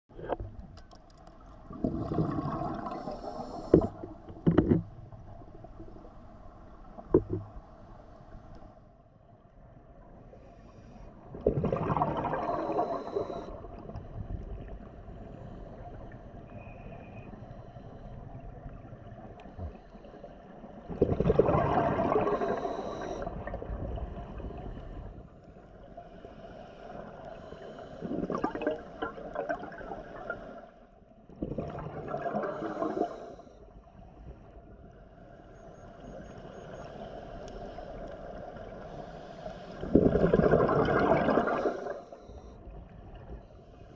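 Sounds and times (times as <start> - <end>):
gurgling exhaled bubbles: 1.6 - 4.1, 11.3 - 13.9, 20.9 - 24.0, 28.0 - 30.6, 31.3 - 33.2, 39.8 - 42.0
low hiss of water: 1.6 - 4.4, 10.1 - 30.8, 31.5 - 43.9.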